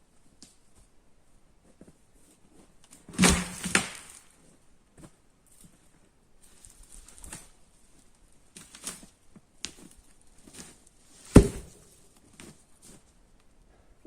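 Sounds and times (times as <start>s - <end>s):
rustling and crunching on forest floor: 1.7s - 13.2s
sharp knock of wood: 11.3s - 11.8s.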